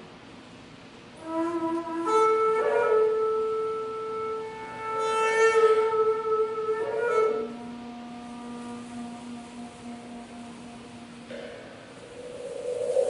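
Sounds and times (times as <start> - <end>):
bamboo flute playing held notes: 1.2 - 11.4.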